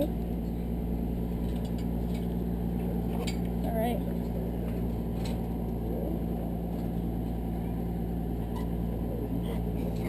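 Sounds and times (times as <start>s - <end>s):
low mechanical hum: 0.0s - 10.0s.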